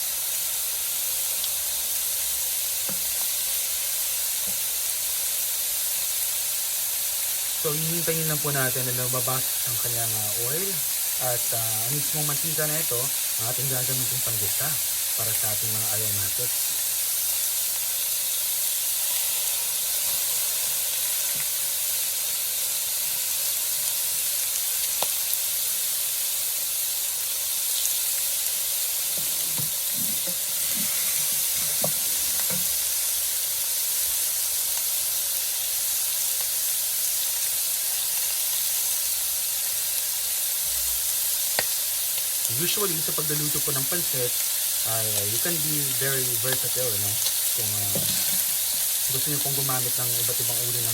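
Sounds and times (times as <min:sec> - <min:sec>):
meat sizzling in a pan: 0:00.0 - 0:50.9
fat popping: 0:29.1 - 0:32.8.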